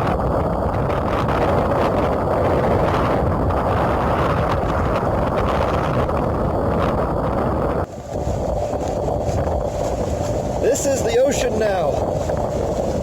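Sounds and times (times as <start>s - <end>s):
storm wind buffeting microphone: 0.0s - 13.0s.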